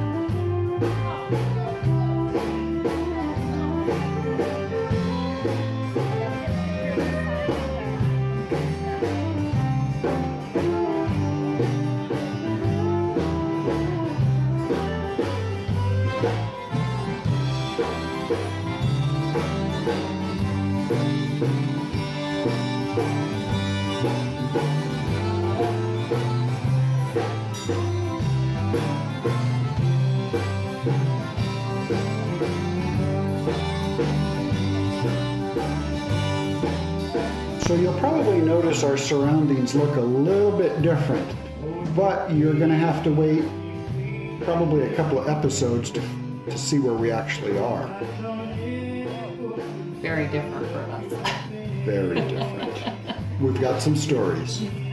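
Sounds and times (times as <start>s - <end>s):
guitar-led background music: 0.0s - 54.9s.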